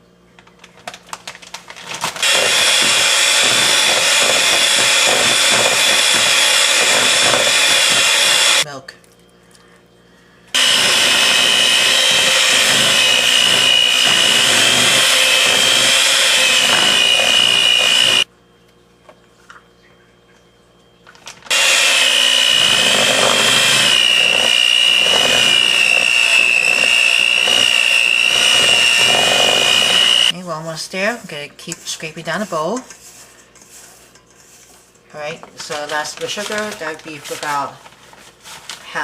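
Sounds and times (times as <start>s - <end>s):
electric mixer motor whine: 1.9s - 8.7s, 10.6s - 18.3s, 21.4s - 30.4s.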